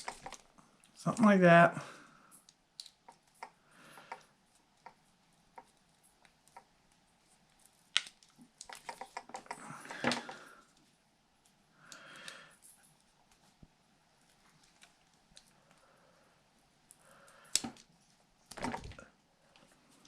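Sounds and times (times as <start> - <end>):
hand tools clicking and snipping: 0.0 - 0.4.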